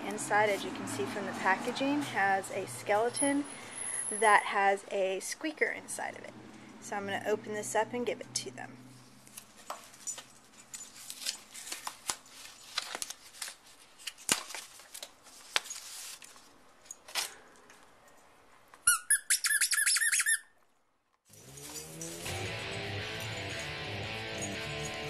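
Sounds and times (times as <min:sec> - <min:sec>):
packaging crackling and tearing: 0:10.9 - 0:16.4
dog toy squeaking: 0:18.8 - 0:20.5.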